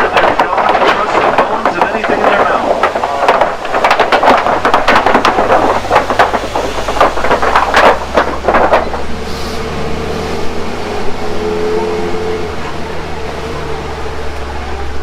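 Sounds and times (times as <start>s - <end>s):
truck body clattering and rattling: 0.0s - 11.2s
truck engine drone: 0.0s - 15.0s.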